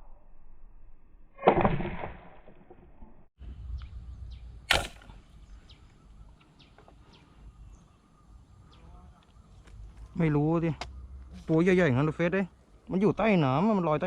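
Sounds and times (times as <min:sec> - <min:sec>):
arrow shot and splash: 0:01.4 - 0:02.8, 0:04.7 - 0:05.1.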